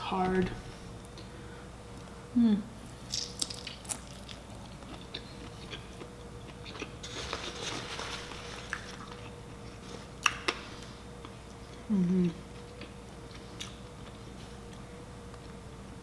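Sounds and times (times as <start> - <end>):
close biting and chewing: 2.9 - 7.9.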